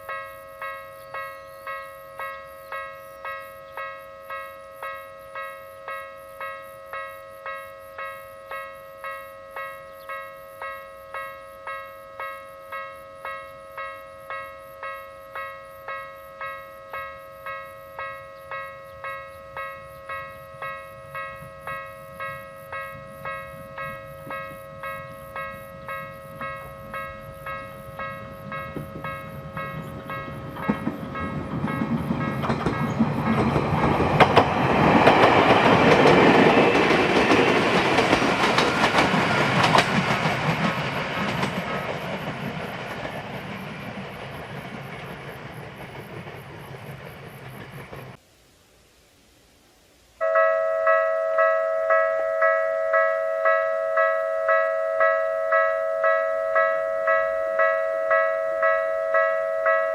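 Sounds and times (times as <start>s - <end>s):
level-crossing electronic bell: 0.0s - 33.4s, 50.2s - 59.9s
electric train passing: 0.0s - 48.2s, 50.2s - 59.9s
wheels clacking over rail joints: 16.4s - 48.2s.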